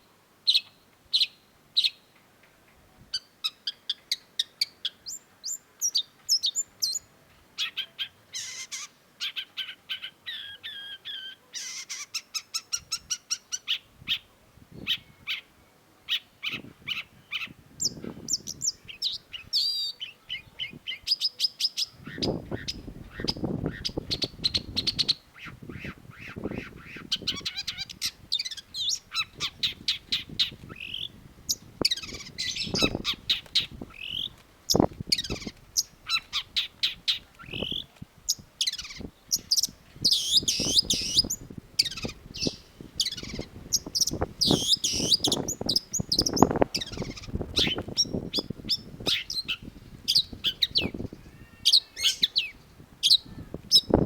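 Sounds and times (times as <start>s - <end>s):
shrike singing rapid chirps: 21.7s - 54.0s.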